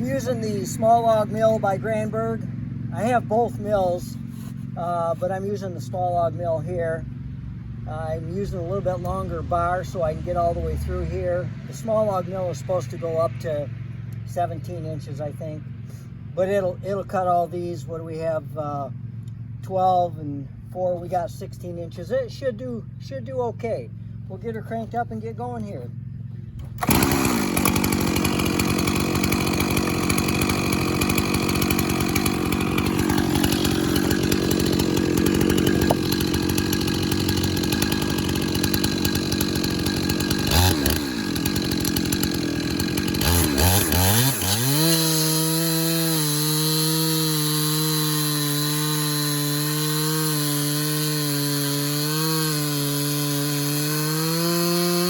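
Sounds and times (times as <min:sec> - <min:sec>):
chainsaw ripping log into boards: 0:00.0 - 0:02.3, 0:03.0 - 0:05.4, 0:26.6 - 0:55.0.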